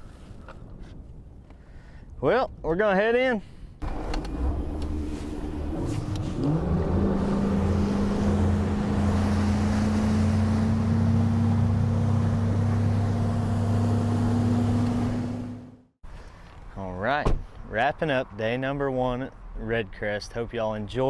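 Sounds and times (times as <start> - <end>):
outboard motor throttling up: 3.8 - 15.7.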